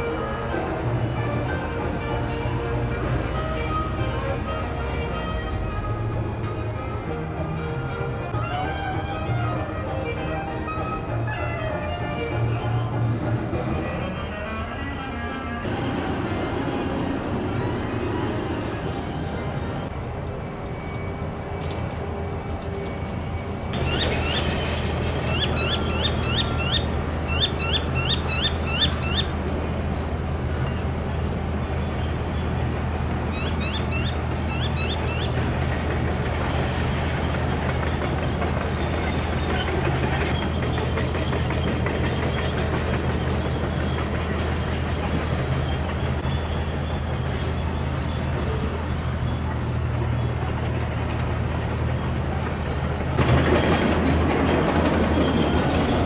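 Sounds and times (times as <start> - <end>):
high descending chirps: 25.3 - 29.3, 33.3 - 35.3.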